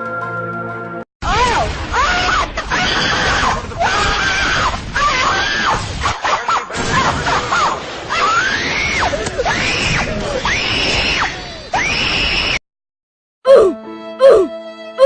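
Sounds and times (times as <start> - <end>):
high-pitched screams: 1.3 - 12.6.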